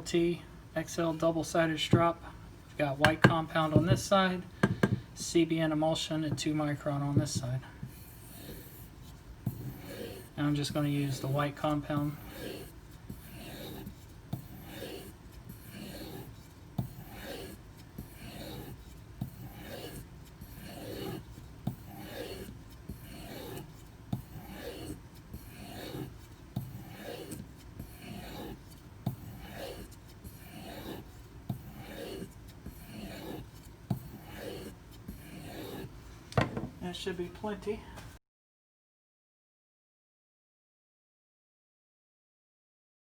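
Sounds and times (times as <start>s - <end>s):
knife rubbing on leather strop: 7.2s - 35.9s.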